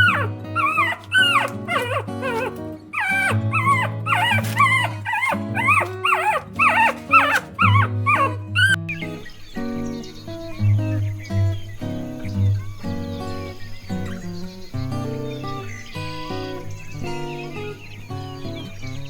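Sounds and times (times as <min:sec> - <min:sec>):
high animal calls: 0:00.0 - 0:10.6.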